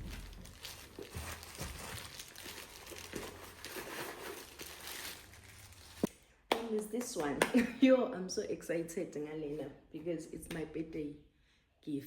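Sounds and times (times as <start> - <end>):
packaging rustling and crinkling: 0.0 - 6.1.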